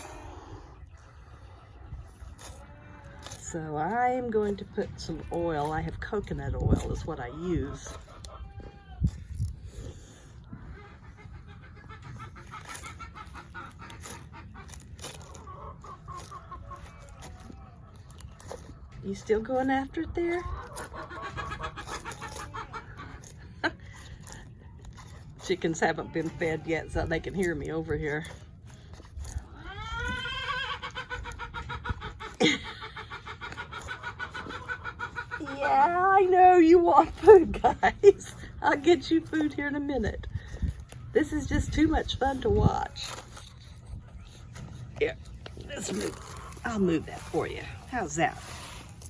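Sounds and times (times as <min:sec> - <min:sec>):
chickens calling: 0:00.0 - 0:49.0
chickens clucking: 0:00.0 - 0:49.0
chicken squawk: 0:10.5 - 0:18.8, 0:20.5 - 0:24.4, 0:29.3 - 0:35.6.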